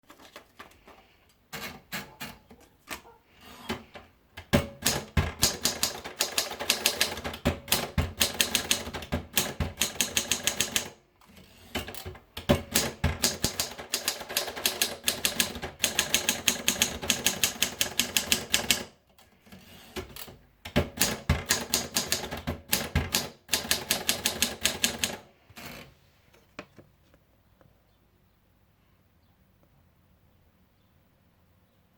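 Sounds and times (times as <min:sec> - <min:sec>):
typewriter keystrokes: 0:03.7 - 0:11.0, 0:11.7 - 0:18.9, 0:20.0 - 0:25.3.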